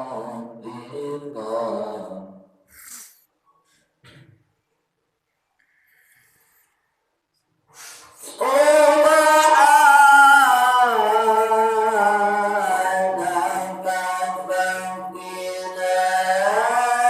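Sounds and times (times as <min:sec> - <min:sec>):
man chanting: 0:00.0 - 0:02.6, 0:08.2 - 0:17.0
intake of breath: 0:05.6 - 0:07.1, 0:07.7 - 0:08.4.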